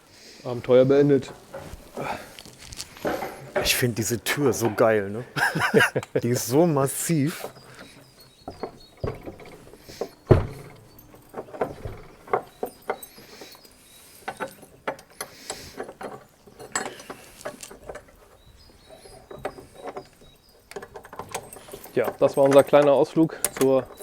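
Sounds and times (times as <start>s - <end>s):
heavy door shutting: 10.2s - 12.2s.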